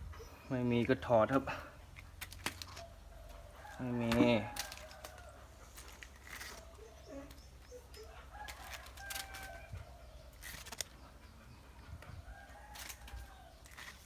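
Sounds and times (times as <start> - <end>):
chickens clucking: 2.0 - 14.0
rooster crowing: 8.0 - 10.0.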